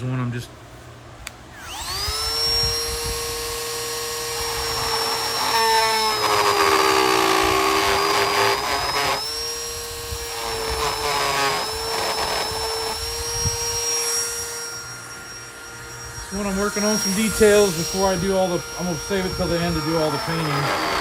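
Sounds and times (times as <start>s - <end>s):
rotary carving tool whining: 1.5s - 21.0s
tool grinding into wood: 1.6s - 21.0s.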